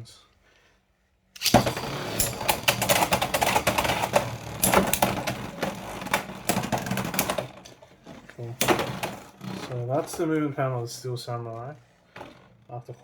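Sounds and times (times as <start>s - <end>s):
spinning top launched into stadium: 1.4s - 7.4s
spinning top clicking and rattling: 1.4s - 7.6s.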